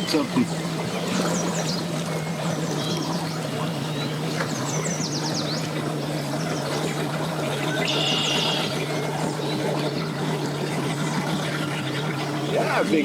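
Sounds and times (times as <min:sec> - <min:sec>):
outboard motor idling: 0:00.0 - 0:13.0.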